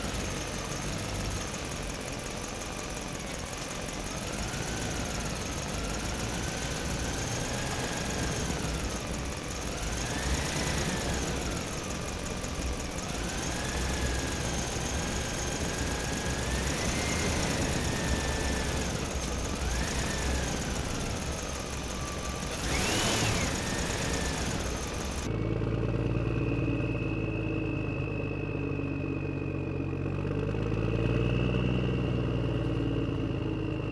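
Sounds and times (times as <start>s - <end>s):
electric motors whining: 0.0s - 25.3s.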